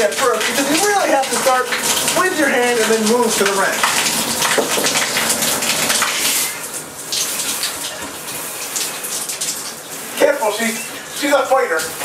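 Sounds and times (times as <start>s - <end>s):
shower water spraying: 0.0s - 12.0s.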